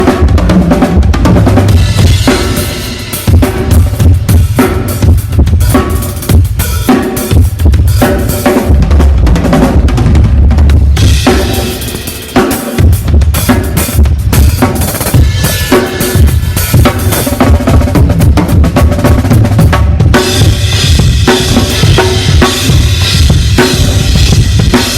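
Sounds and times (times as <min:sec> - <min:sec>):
drum kit playing: 0:00.0 - 0:24.9.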